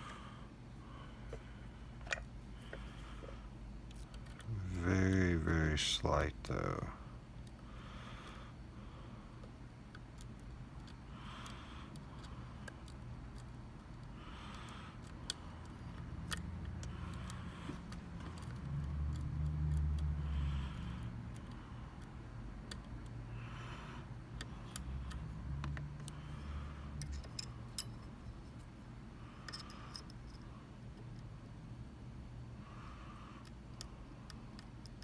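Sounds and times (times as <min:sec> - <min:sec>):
lock pick clicking and scraping: 0:09.9 - 0:20.0, 0:24.3 - 0:28.7, 0:29.4 - 0:31.3.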